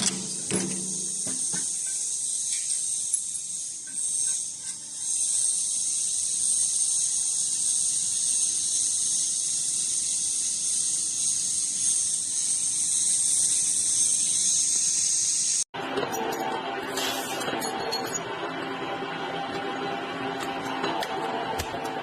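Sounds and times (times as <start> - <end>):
high-pitched buzzing hiss: 0.1 - 15.7.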